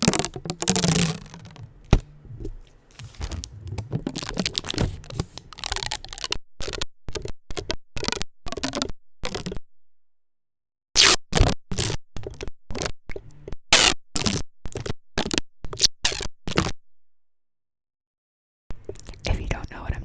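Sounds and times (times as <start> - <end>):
adhesive tape crackling: 0.0 - 9.6.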